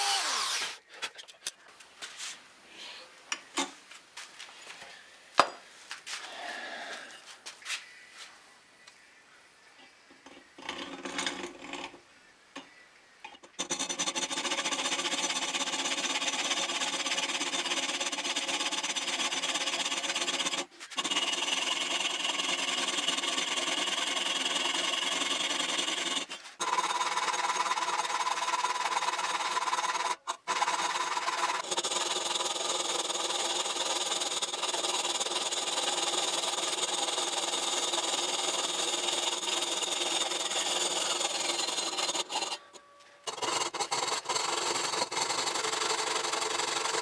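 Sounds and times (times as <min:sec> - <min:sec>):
electric motor running: 0:00.0 - 0:00.8.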